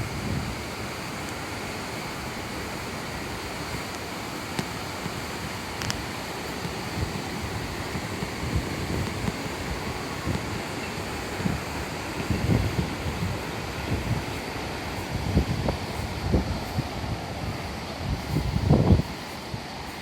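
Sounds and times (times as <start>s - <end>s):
wind buffeting microphone: 0.0s - 1.0s, 5.1s - 20.0s
river and waterfall roaring: 0.0s - 20.0s.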